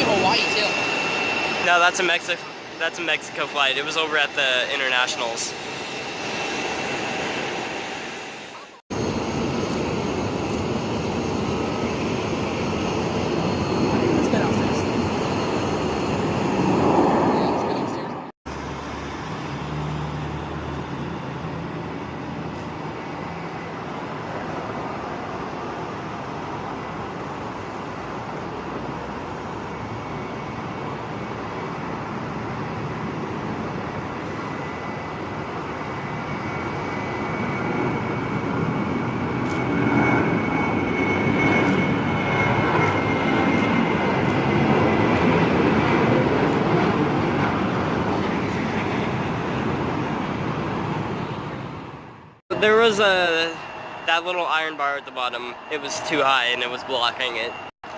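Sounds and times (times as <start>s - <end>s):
high whine falling in pitch: 0.0s - 16.8s, 52.5s - 57.9s
jet airliner engines: 0.0s - 57.9s.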